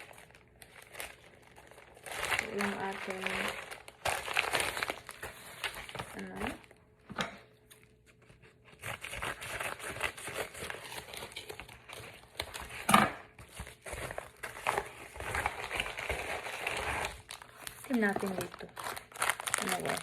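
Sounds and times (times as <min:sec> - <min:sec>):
packaging crackling rustles: 0:00.0 - 0:06.8, 0:08.7 - 0:20.0.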